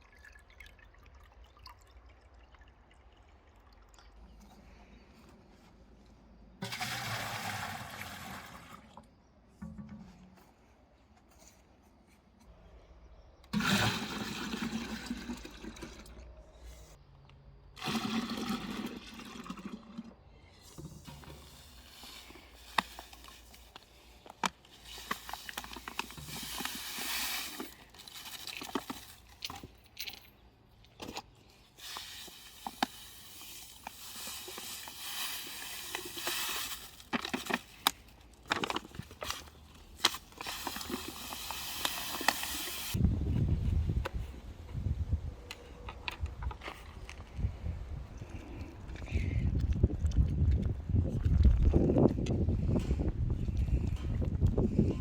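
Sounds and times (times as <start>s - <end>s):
water pouring and splashing: 0.0s - 4.3s, 6.6s - 9.0s, 13.6s - 16.2s, 17.8s - 23.8s, 24.7s - 30.2s, 31.8s - 43.0s.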